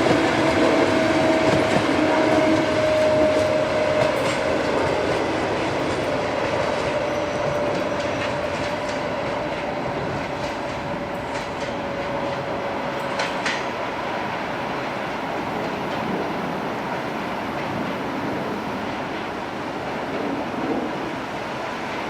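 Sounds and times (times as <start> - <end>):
locomotive whining tone: 0.0 - 16.8
train wheels clicking on rail joints: 0.0 - 22.0.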